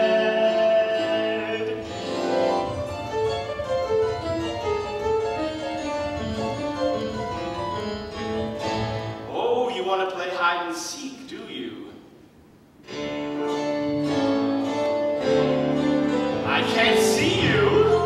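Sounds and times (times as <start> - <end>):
instrumental melody of short notes: 12.9 - 18.0.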